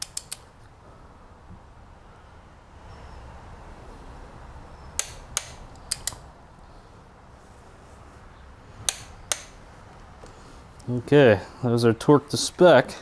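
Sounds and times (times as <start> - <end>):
torque wrench clicking: 0.0 - 0.5, 5.0 - 6.3, 8.8 - 9.6.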